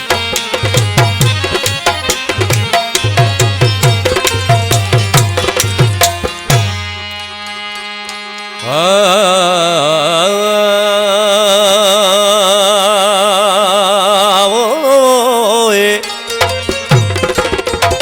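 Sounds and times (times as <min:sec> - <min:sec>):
man singing long vibrato note: 0:07.0 - 0:16.7.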